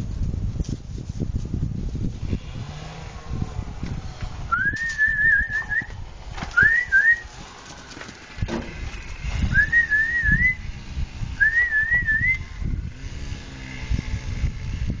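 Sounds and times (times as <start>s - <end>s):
low rumbling noise: 0.0s - 15.0s
high wavering whistle: 4.5s - 6.0s, 6.6s - 7.3s, 9.5s - 10.7s, 11.4s - 12.5s.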